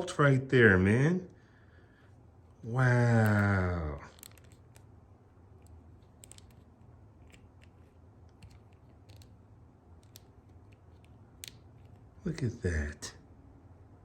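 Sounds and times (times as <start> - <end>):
plastic toy clicks: 4.1 - 4.8, 6.0 - 6.7, 8.4 - 9.4.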